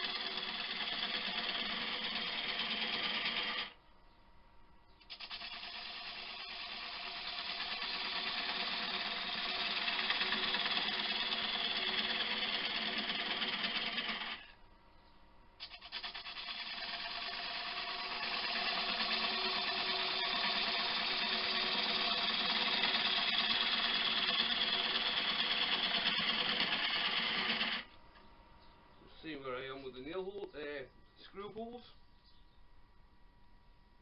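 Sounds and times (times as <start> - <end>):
gouge cutting wood on lathe: 0.0 - 3.8, 5.1 - 14.5, 15.6 - 27.9
lathe motor hum: 0.0 - 3.8, 5.3 - 14.6, 15.8 - 28.0.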